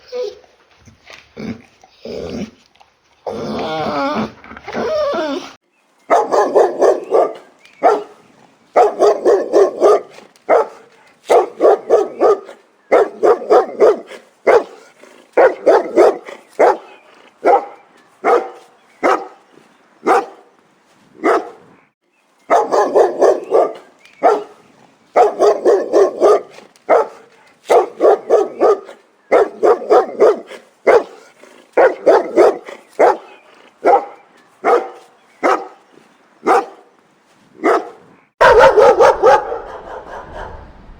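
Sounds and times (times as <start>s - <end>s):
dog barking: 6.1s - 8.2s, 8.8s - 19.4s, 20.0s - 20.5s, 21.2s - 21.7s, 22.5s - 24.6s, 25.2s - 35.8s, 36.4s - 36.9s, 37.6s - 40.9s.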